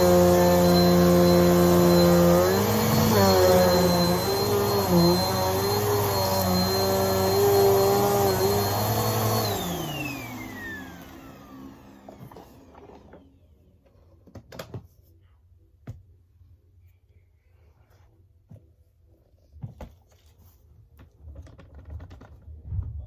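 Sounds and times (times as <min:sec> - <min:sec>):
vacuum cleaner spinning down: 0:00.0 - 0:13.4.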